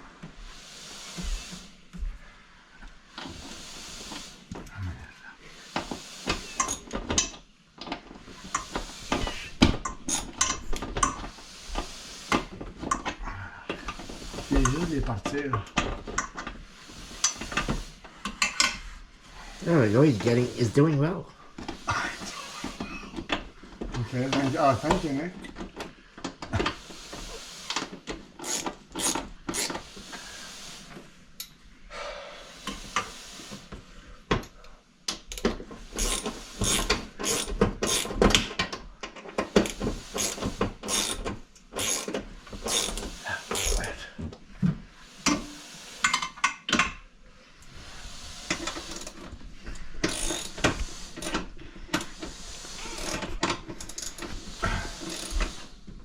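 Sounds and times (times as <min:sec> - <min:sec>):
screws being tightened clicking: 0:06.3 - 0:07.4, 0:17.1 - 0:18.8, 0:27.7 - 0:29.8, 0:35.1 - 0:38.8, 0:39.4 - 0:43.8, 0:50.0 - 0:55.7.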